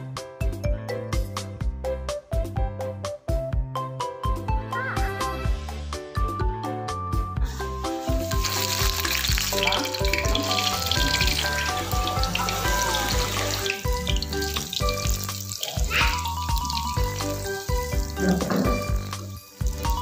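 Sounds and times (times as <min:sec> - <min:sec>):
background music with beat: 0:00.0 - 0:20.0
food sizzling in hot oil: 0:07.5 - 0:20.0.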